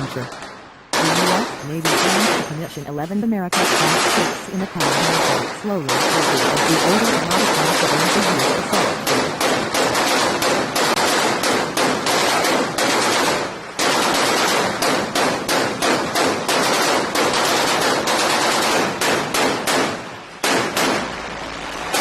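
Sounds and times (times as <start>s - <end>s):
automatic gunfire bursts: 0.0s - 2.7s, 3.5s - 22.0s.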